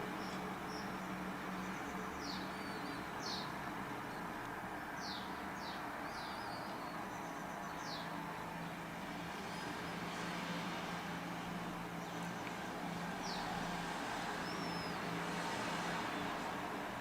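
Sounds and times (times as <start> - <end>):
small birds chirping: 0.0 - 4.3, 5.0 - 10.4, 13.2 - 16.4.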